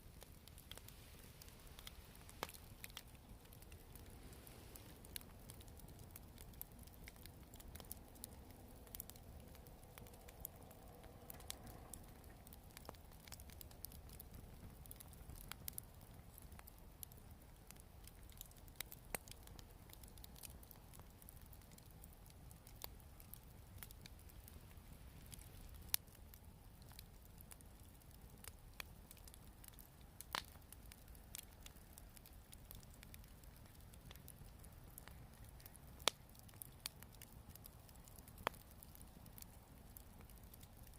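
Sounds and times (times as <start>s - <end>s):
faint low rumble: 0.0s - 28.9s
bonfire crackling and popping: 0.0s - 40.9s.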